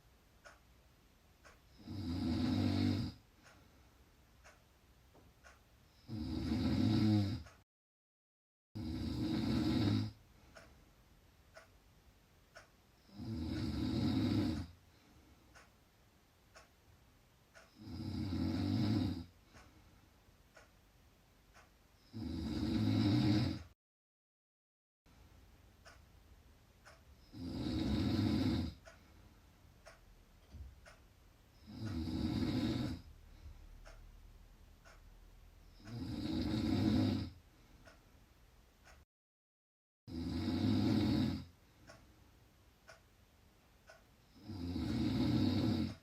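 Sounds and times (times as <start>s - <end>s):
faint ticks: 0.4s - 0.8s, 1.4s - 7.6s, 8.8s - 10.9s, 11.5s - 11.8s, 12.5s - 15.8s, 16.5s - 16.8s, 17.5s - 20.8s, 21.5s - 23.7s, 25.8s - 26.2s, 26.8s - 34.2s, 34.8s - 38.1s, 38.8s - 39.0s, 40.2s - 42.2s, 42.8s - 43.2s, 43.8s - 46.0s
loud snoring: 1.7s - 3.2s, 6.0s - 7.6s, 8.8s - 10.2s, 13.0s - 14.8s, 17.7s - 19.3s, 22.0s - 23.8s, 27.2s - 28.8s, 31.6s - 33.1s, 35.7s - 37.4s, 40.1s - 41.5s, 44.3s - 46.0s.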